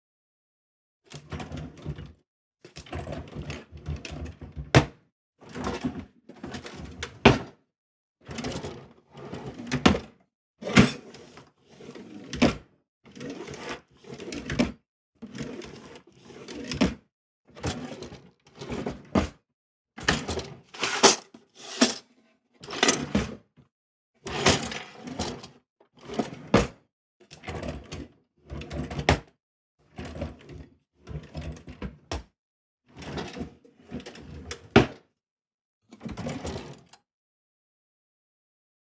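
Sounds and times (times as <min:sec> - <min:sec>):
drawer rattling along runners: 0:20.8 - 0:22.0.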